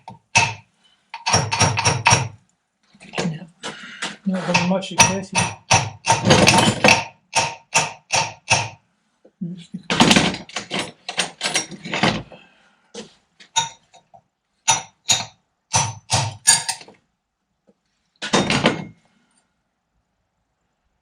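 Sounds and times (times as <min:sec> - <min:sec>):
hammer knocks on steel: 0:04.4 - 0:08.8.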